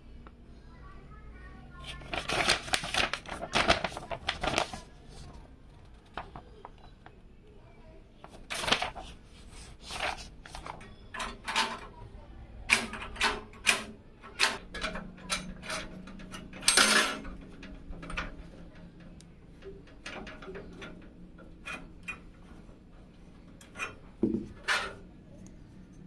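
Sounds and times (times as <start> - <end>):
faint low hum: 0.0 - 13.0
scrape: 9.3 - 10.3
clicks and knocks of hard parts: 10.0 - 12.0, 12.7 - 25.0.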